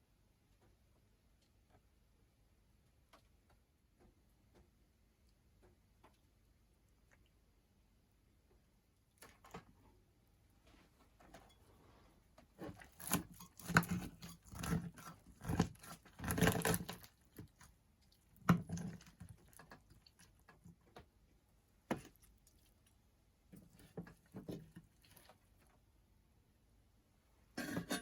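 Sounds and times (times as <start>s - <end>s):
utensils and dishes clattering: 27.6s - 28.0s.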